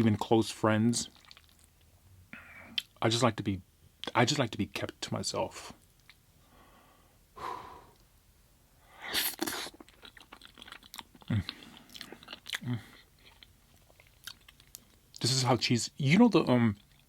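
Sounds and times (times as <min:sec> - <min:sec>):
mouth chewing food: 0:01.0 - 0:02.0, 0:09.1 - 0:15.3, 0:16.7 - 0:17.0
wet mouth clicks and smacks: 0:05.9 - 0:06.2, 0:09.3 - 0:15.0.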